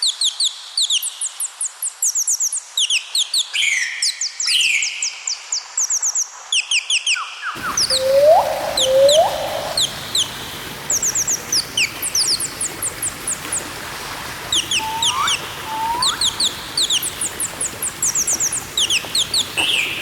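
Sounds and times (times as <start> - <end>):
parrots chirping: 7.6 - 20.0
rising whistles: 7.6 - 20.0.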